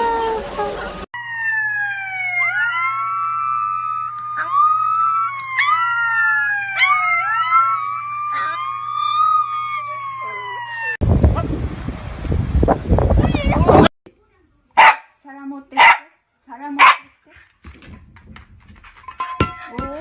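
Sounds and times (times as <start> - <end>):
dog howling: 0.0 - 11.0
siren-like wailing voices: 0.0 - 11.0
dog yelping: 2.4 - 11.0.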